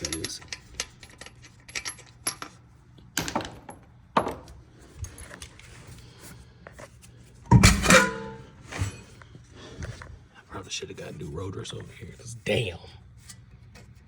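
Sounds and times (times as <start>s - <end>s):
metal parts knocking and clanking: 0.0s - 2.6s, 7.5s - 9.0s
loud ringing metallic clang: 7.5s - 8.6s.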